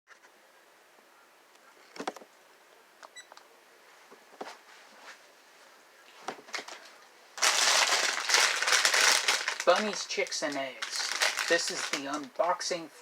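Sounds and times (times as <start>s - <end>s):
plastic bag crinkling: 6.5s - 12.7s.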